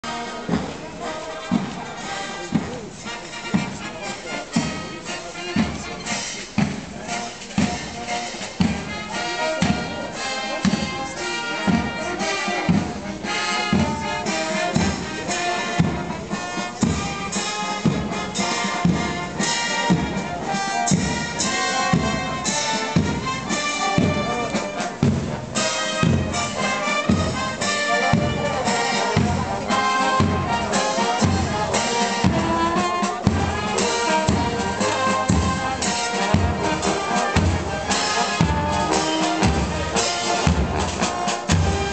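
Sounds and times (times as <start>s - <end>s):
brass band march: 0.0s - 41.9s
steady drum beat: 0.0s - 41.9s.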